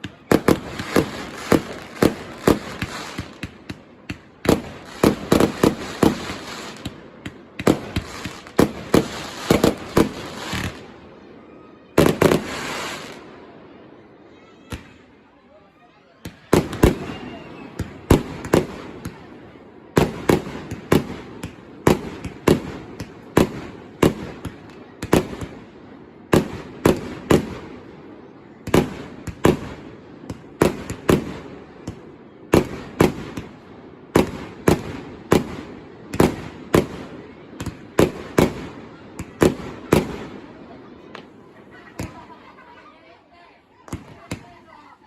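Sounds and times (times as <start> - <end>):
fireworks bangs: 0.0 - 11.0, 11.9 - 13.5, 16.2 - 42.6
continuous fireworks rumble: 0.0 - 11.2, 11.9 - 13.7, 16.3 - 42.8, 43.9 - 45.0.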